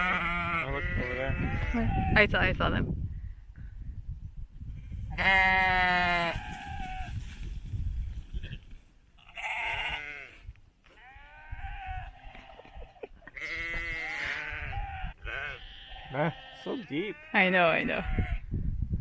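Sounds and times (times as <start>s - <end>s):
sheep bleating: 0.0s - 2.2s, 5.1s - 7.1s, 9.2s - 18.4s.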